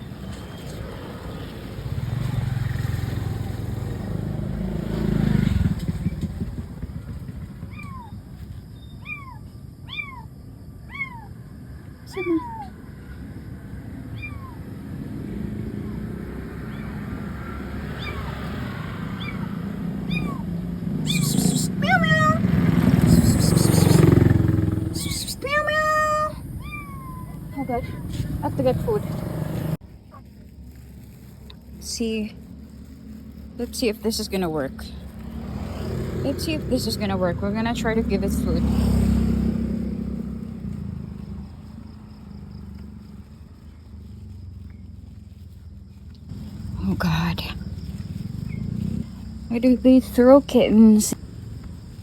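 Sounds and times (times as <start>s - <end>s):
vehicle engine rumbling: 0.0s - 52.0s
kittens meowing: 7.6s - 8.3s, 8.9s - 11.4s, 12.0s - 12.8s, 14.0s - 14.7s, 16.7s - 17.2s, 17.9s - 18.4s, 19.2s - 28.4s.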